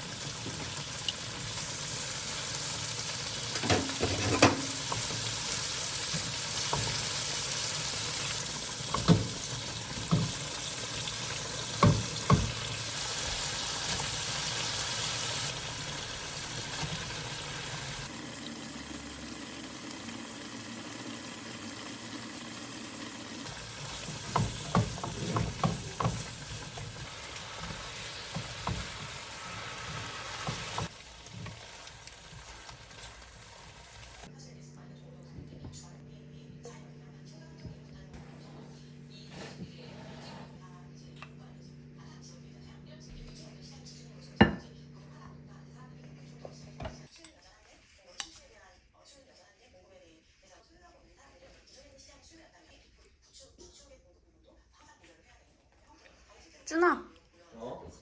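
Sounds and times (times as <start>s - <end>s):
food sizzling in a pan: 0.0s - 34.3s.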